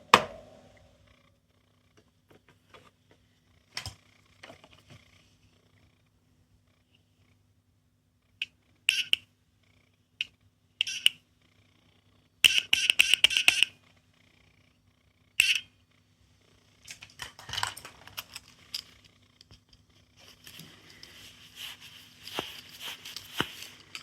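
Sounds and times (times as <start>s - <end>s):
plastic toy clicks: 12.5s - 13.7s.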